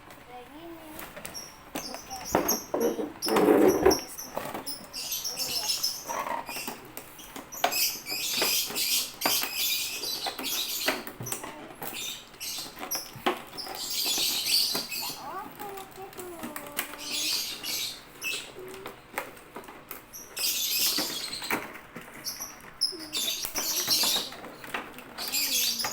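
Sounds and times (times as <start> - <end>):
small clicks and knocks: 6.2 - 25.9.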